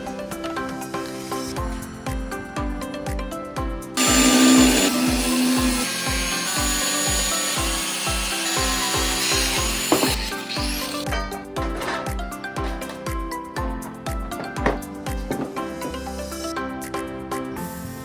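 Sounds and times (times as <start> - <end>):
background music with steady beat: 0.0 - 18.0
power tool whining and grinding: 4.0 - 11.0.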